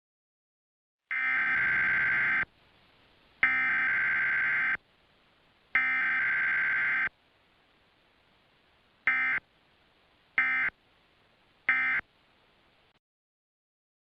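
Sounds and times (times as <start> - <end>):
digital data bursts: 1.1 - 2.5, 3.4 - 4.8, 5.8 - 7.1.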